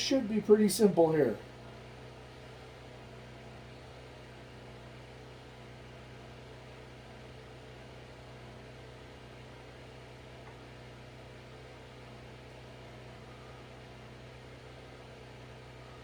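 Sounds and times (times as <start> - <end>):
steady low hum: 0.0 - 1.6.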